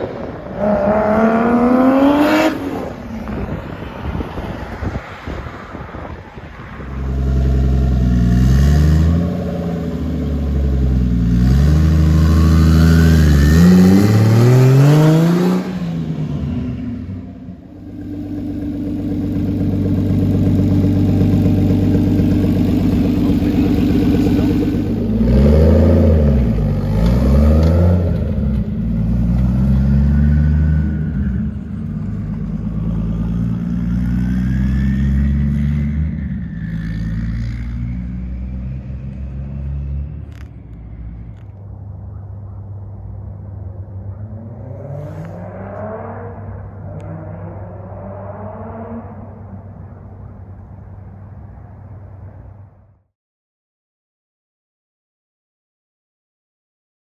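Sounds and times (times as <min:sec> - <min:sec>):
car engine accelerating: 0:06.8 - 0:41.6, 0:44.1 - 0:49.6.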